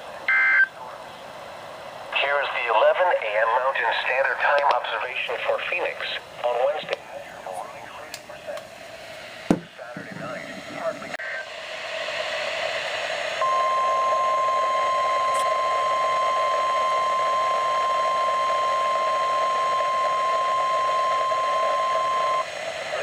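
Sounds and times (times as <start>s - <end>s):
radio static hiss: 0.0s - 14.2s, 20.9s - 23.0s
steady warning alarm tone: 13.4s - 23.0s.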